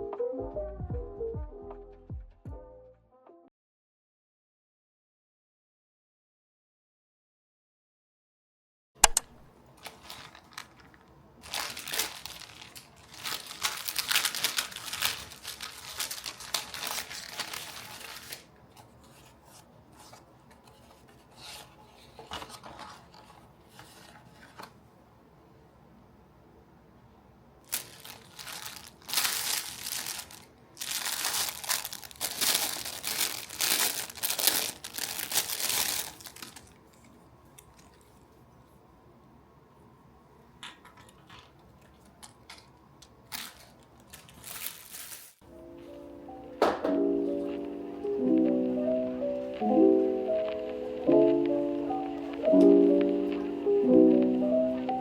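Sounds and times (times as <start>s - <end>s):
sharp click: 9.0s - 9.4s
wrapping material crinkling and tearing: 9.3s - 24.8s, 27.6s - 38.3s, 40.9s - 45.4s, 46.9s - 55.0s.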